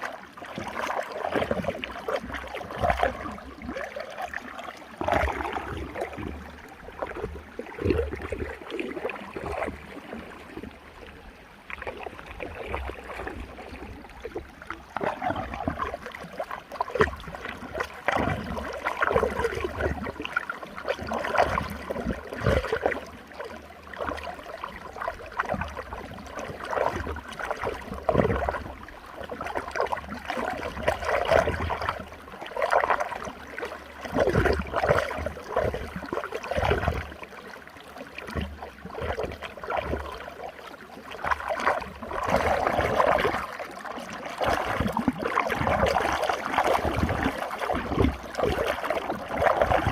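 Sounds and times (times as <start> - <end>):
water gurgling and splashing: 0.0 - 49.9.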